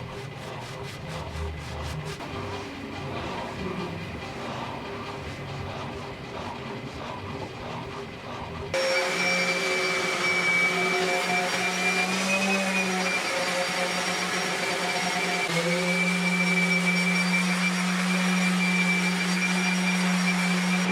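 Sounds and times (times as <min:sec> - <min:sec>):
rough noisy machine sound: 0:00.0 - 0:20.9
electric motor whine: 0:08.7 - 0:20.9.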